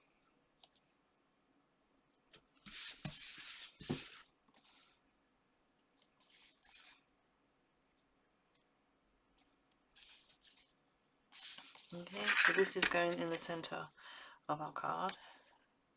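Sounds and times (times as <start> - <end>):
paper and card rustling: 6.2 - 7.0, 10.0 - 13.7.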